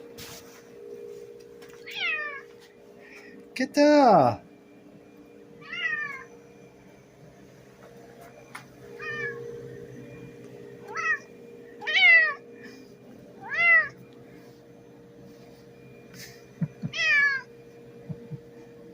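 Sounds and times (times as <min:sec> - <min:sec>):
cat meowing: 0:01.9 - 0:02.4, 0:05.6 - 0:06.2, 0:09.0 - 0:09.4, 0:13.4 - 0:14.0, 0:16.9 - 0:17.4.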